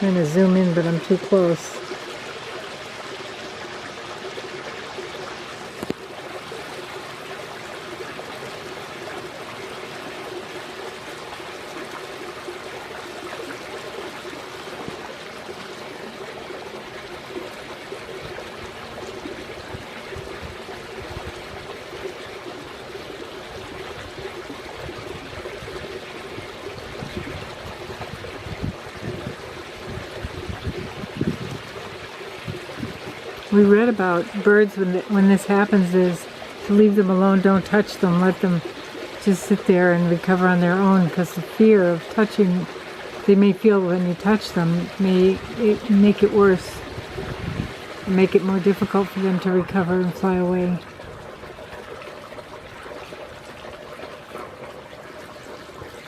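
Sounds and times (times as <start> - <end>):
water trickling in pool: 0.0 - 56.0.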